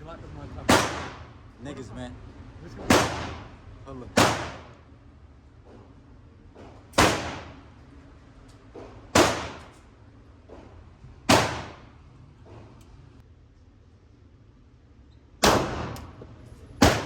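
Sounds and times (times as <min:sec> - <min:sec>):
pistol shots: 0:00.7 - 0:01.4, 0:02.8 - 0:04.8, 0:06.9 - 0:07.7, 0:09.1 - 0:09.8, 0:11.2 - 0:12.0, 0:15.4 - 0:16.2, 0:16.8 - 0:17.0.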